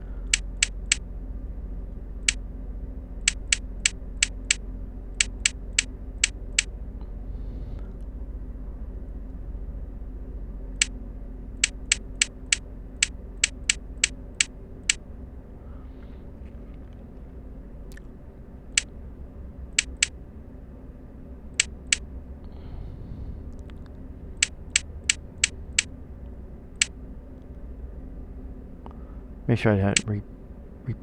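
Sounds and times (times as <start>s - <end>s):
steady low hum: 0.0s - 31.0s
sharp game clicks: 0.3s - 1.0s, 2.2s - 2.4s, 3.2s - 4.6s, 5.2s - 6.7s, 11.6s - 15.0s, 19.8s - 20.2s, 21.6s - 22.0s, 24.4s - 25.9s, 29.8s - 30.2s.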